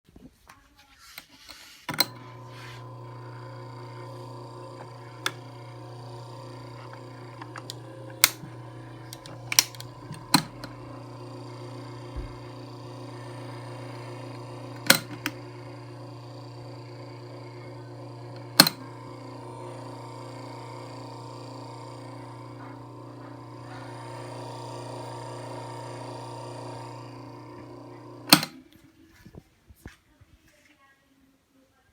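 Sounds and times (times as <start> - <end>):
electric fan motor hum: 1.8 - 28.8
fan rattling clicks: 6.0 - 10.8.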